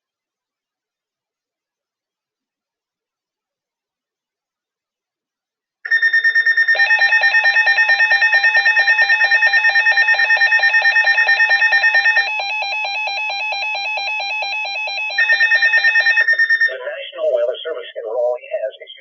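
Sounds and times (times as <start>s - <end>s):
electronic emergency alert tone: 5.9s - 17.0s.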